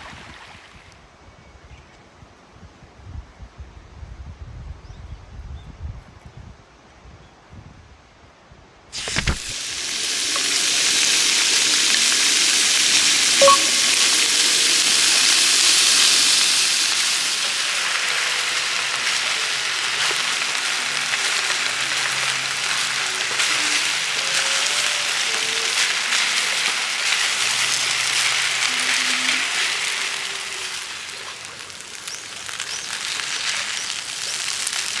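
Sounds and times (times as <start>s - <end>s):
food sizzling in pan: 9.0s - 35.0s.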